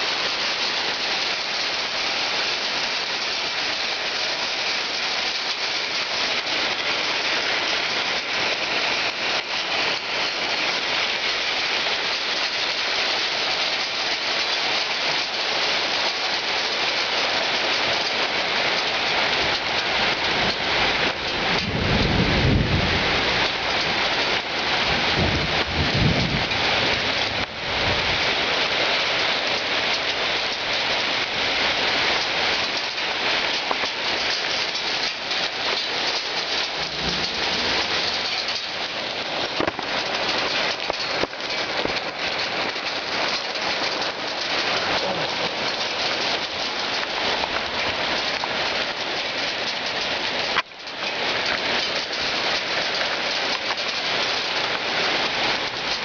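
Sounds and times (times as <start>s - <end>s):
hail and heavy rain pelting: 0.0s - 56.0s
low rumble of thunder: 20.4s - 28.3s, 36.4s - 40.3s.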